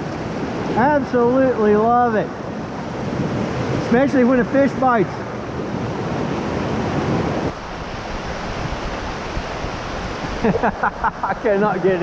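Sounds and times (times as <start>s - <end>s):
creek water rushing: 0.0s - 12.0s
wind noise on microphone: 2.4s - 11.3s.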